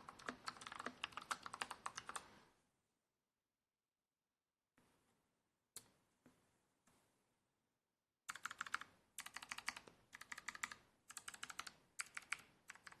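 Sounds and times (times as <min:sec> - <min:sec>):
computer keyboard typing: 0:00.0 - 0:02.3, 0:08.3 - 0:13.0.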